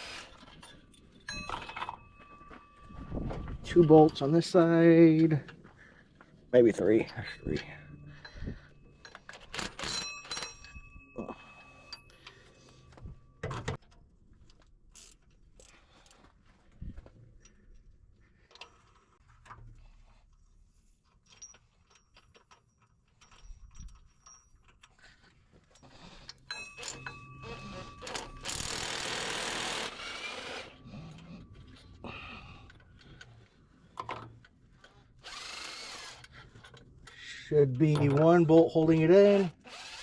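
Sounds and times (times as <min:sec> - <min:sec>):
wrench and ratchet clinking: 0:06.6 - 0:13.9, 0:21.1 - 0:40.0.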